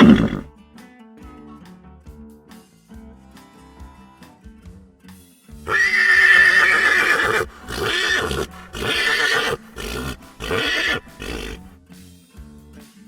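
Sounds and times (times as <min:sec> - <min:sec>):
horse whinnying: 0:00.0 - 0:00.5, 0:05.7 - 0:11.7.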